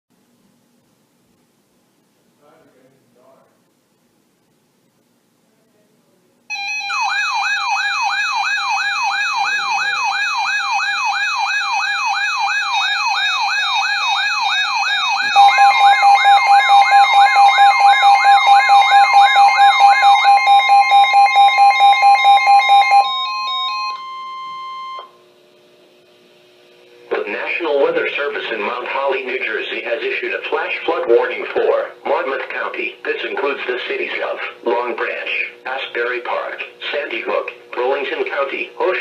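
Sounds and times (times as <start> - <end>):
warbling electronic alert tone: 6.5 - 25.0
pulsing steady tone: 12.3 - 25.1
steady beep: 15.2 - 25.1.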